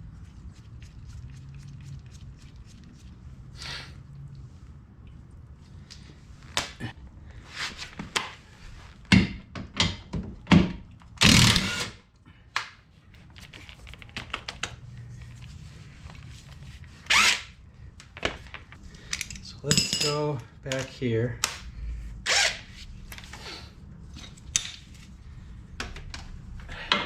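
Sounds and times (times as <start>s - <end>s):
metal tools clinking: 19.0s - 21.0s.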